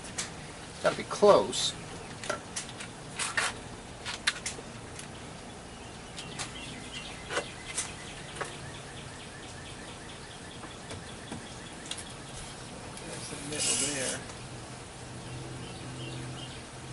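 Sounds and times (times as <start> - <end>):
clicks and knocks on wood and pipe: 2.1 - 5.1.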